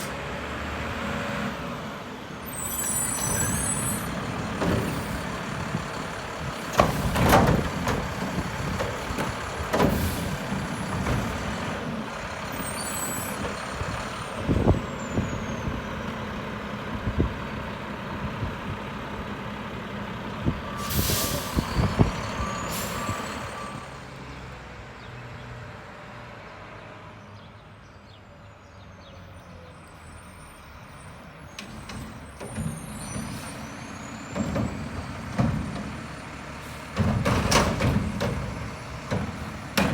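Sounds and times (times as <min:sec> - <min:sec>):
garbage truck engine running: 0:00.0 - 0:24.0, 0:31.2 - 0:39.9
sharp bangs and knocks: 0:04.1 - 0:12.1, 0:31.6 - 0:39.9
air brake hiss: 0:20.8 - 0:21.9.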